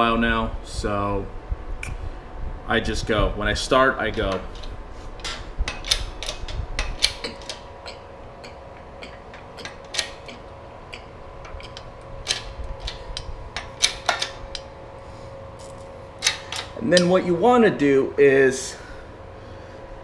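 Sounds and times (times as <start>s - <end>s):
faint steady hum: 0.0s - 20.0s
metal press clicking: 4.1s - 8.0s, 8.8s - 14.7s, 16.2s - 17.2s.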